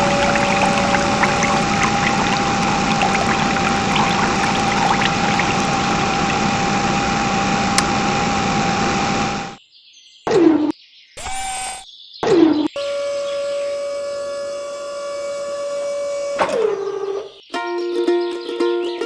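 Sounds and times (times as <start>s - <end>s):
water pouring and splashing: 0.0s - 8.2s
electric water pump whining: 0.0s - 9.6s.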